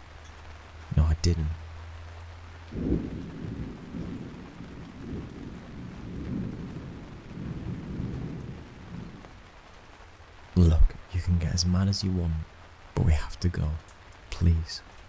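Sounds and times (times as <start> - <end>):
steady rain: 0.0 - 15.0
thunder rumbling: 2.7 - 9.4.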